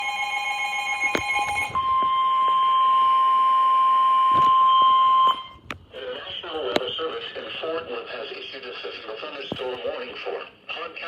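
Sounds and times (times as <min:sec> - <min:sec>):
buzzy lower tone: 0:00.0 - 0:05.6
steady alarm tone: 0:00.0 - 0:05.6
radio static clicks: 0:05.5 - 0:10.3.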